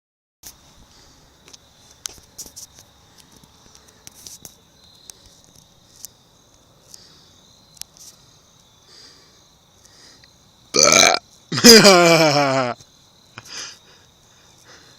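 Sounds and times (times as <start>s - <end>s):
faint clicks and rustles: 0.5s - 7.1s.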